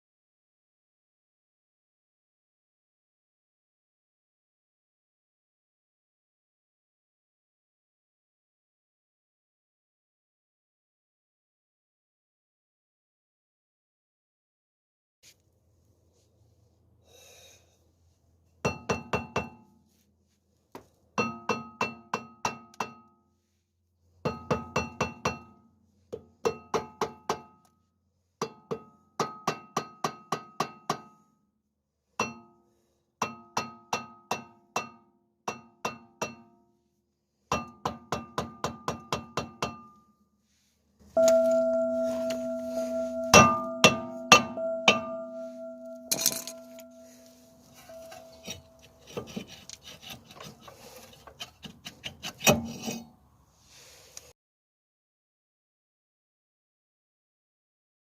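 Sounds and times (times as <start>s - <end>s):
sustained metallic ringing: 41.2s - 49.1s
hammer striking metal: 41.2s - 49.4s.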